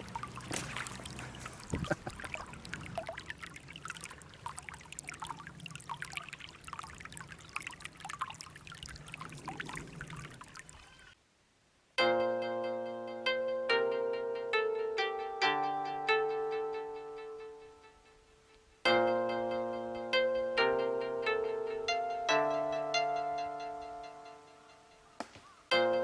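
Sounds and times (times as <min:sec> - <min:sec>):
stream babbling over stones: 0:00.0 - 0:11.0
plucked harp-like music: 0:12.0 - 0:17.9.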